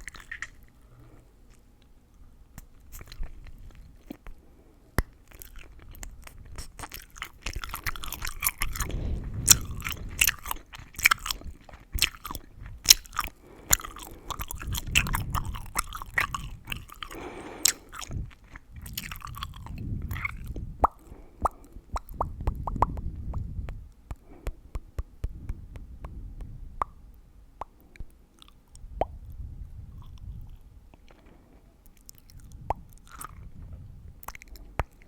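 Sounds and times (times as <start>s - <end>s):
gum chewing: 0.0s - 1.6s, 2.6s - 4.4s, 5.0s - 27.0s, 27.6s - 35.0s
gum crackling pops: 5.0s - 27.0s, 31.9s - 33.5s, 34.2s - 35.0s.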